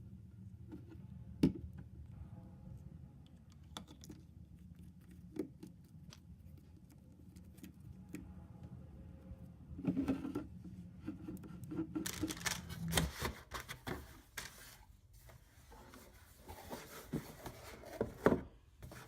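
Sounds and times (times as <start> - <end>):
low hum: 0.0 - 13.1.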